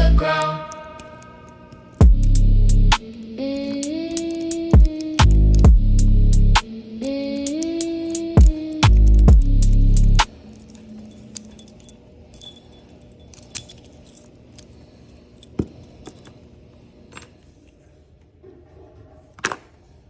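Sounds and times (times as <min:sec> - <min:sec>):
lockpicking tools clicking on padlock: 0:00.3 - 0:02.4, 0:03.0 - 0:06.1, 0:07.0 - 0:14.8, 0:15.4 - 0:16.3.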